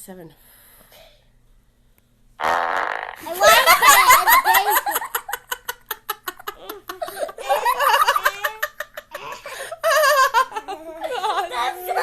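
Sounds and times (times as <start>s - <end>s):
people giggling and laughing: 3.2s - 12.0s.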